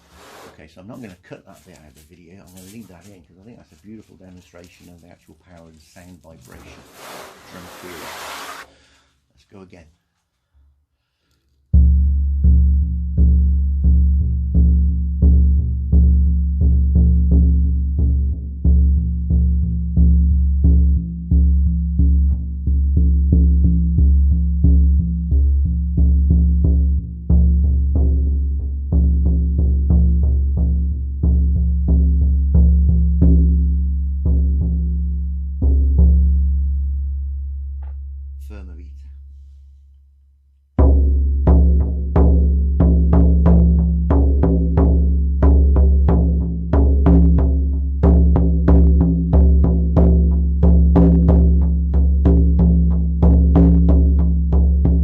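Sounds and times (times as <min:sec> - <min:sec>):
frame drum deep booms: 0:11.8 - 0:38.1, 0:40.8 - 0:55.0
frame drum booming: 0:40.8 - 0:55.0.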